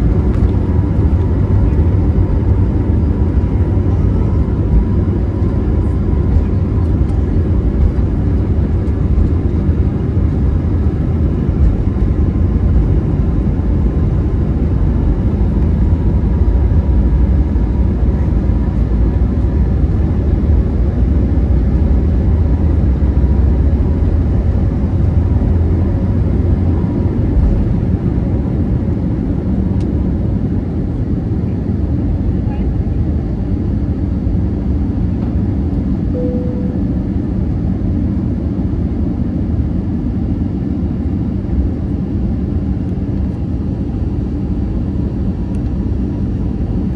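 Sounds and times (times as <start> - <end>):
airplane engines roaring: 0.0 - 46.9
faint whine: 36.0 - 38.3.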